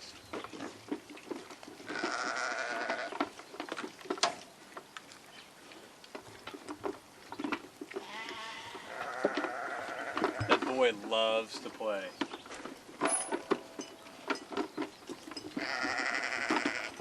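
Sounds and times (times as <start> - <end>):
light knocks and rustles: 0.1 - 17.0
livestock bleating: 1.9 - 3.2, 8.0 - 10.5, 15.6 - 17.0.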